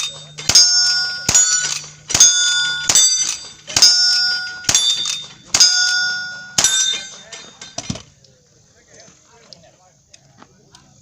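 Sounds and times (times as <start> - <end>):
steel plate ringing: 0.0 - 7.9.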